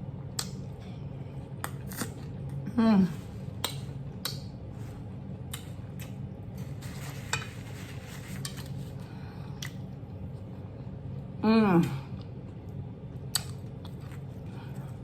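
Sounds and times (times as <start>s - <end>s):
air conditioner hum: 0.0s - 15.0s
fork scraping a plate: 6.6s - 8.8s.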